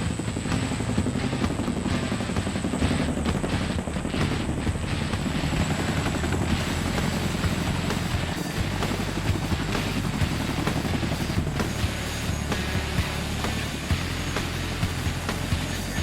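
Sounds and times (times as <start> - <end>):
helicopter rotor chop: 0.0 - 16.0
high turbine whine: 0.0 - 16.0.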